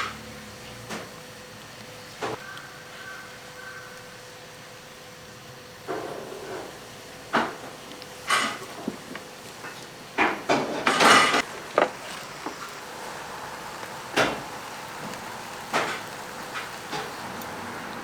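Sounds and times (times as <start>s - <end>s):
metal scraping rattle: 7.4s - 12.7s.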